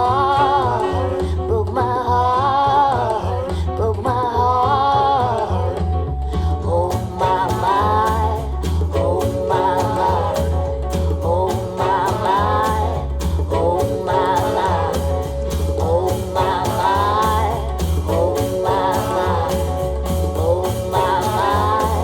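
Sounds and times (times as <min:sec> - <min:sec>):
country song over loudspeaker: 0:06.6 - 0:22.0.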